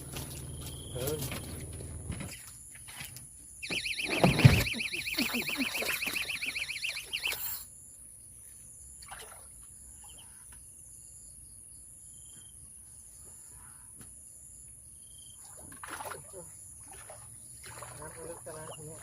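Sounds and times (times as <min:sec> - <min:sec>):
high insect hum: 0:00.0 - 0:02.6, 0:03.6 - 0:15.5
loud warbling call: 0:03.6 - 0:07.6
faint bird chirps: 0:09.9 - 0:10.6.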